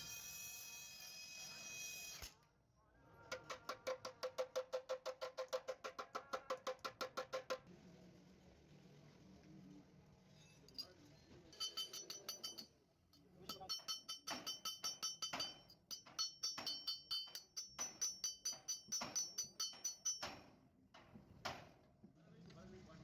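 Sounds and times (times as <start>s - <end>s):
hammer striking sheet steel: 13.5s - 21.8s.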